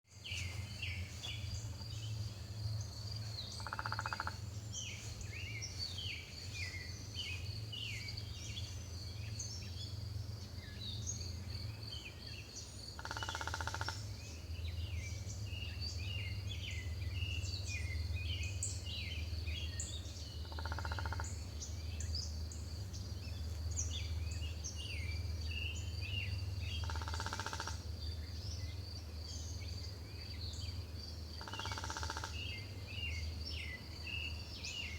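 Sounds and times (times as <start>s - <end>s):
songbirds chirping: 0.0s - 34.9s
steady low hum: 0.1s - 34.9s
woodpecker drumming: 3.6s - 4.4s, 13.0s - 14.1s, 20.5s - 21.4s, 26.8s - 27.8s, 31.4s - 32.4s.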